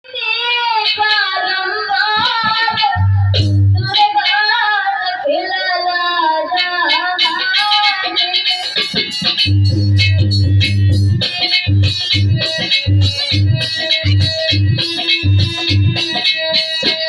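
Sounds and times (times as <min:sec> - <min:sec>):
woman singing devotional song: 0:00.0 - 0:08.5
deep bass note: 0:03.0 - 0:03.9, 0:09.5 - 0:16.0.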